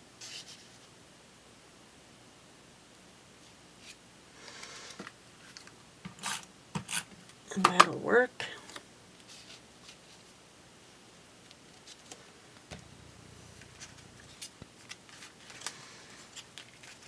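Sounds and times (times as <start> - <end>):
soft thump: 12.7 - 14.7.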